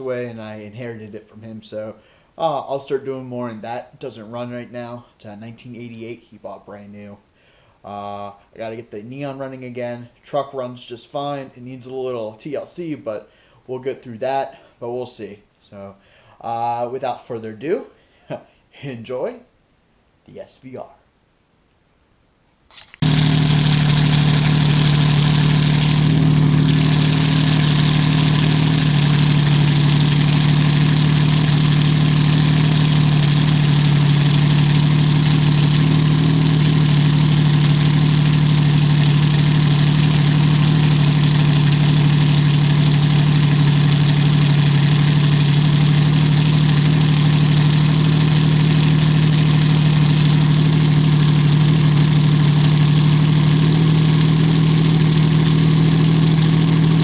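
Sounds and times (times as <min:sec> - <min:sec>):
car engine idling loudly: 0:23.0 - 0:57.0.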